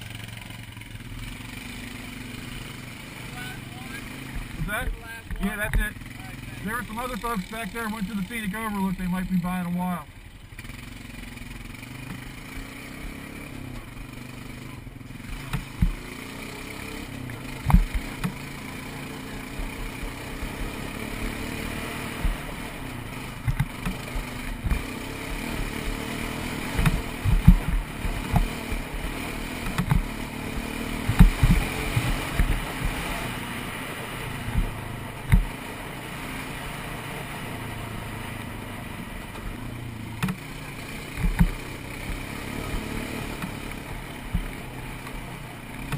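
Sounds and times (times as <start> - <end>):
atv engine running: 0.0 - 45.9
low thumps and knocks: 15.4 - 16.0, 17.6 - 18.4, 22.1 - 22.7, 23.3 - 25.0, 26.6 - 33.2, 34.4 - 35.6, 41.2 - 44.6.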